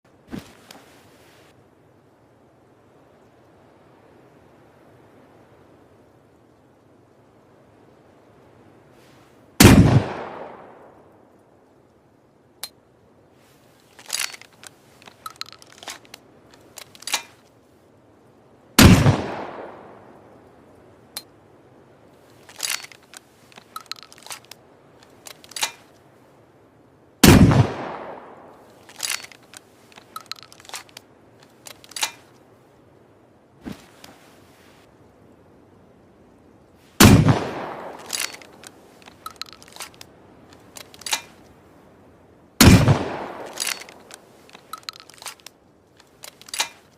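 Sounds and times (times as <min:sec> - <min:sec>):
gun handling clicks and knocks: 0:00.3 - 0:00.9, 0:13.5 - 0:17.6, 0:22.2 - 0:26.2, 0:27.2 - 0:32.6, 0:33.6 - 0:34.4, 0:37.0 - 0:41.7, 0:42.6 - 0:46.9
shotgun blasts: 0:09.6 - 0:10.8, 0:18.8 - 0:19.8, 0:27.2 - 0:28.4, 0:37.0 - 0:38.4, 0:42.6 - 0:43.9.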